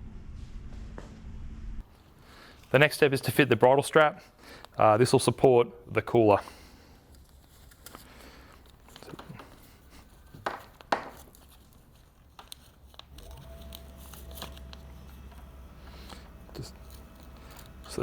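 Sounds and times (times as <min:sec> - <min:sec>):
strap rustling: 0:06.7 - 0:18.0
faint steady hum: 0:11.6 - 0:18.0.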